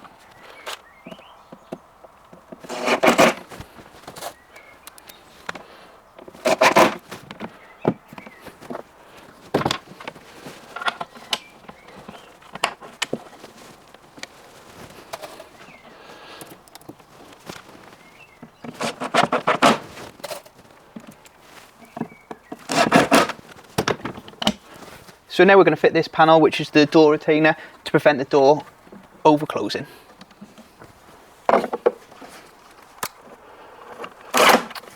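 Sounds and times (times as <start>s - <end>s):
drill driving screws: 2.6s - 3.5s, 6.4s - 7.0s, 22.7s - 23.4s, 34.3s - 34.8s
tools and parts clicking: 4.8s - 5.6s, 6.2s - 7.0s, 33.8s - 34.9s.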